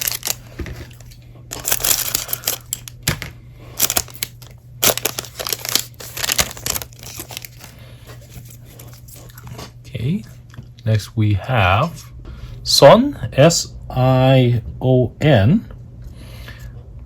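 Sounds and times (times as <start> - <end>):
foil packaging crinkling: 0.0 - 9.4
steady low hum: 0.0 - 17.0.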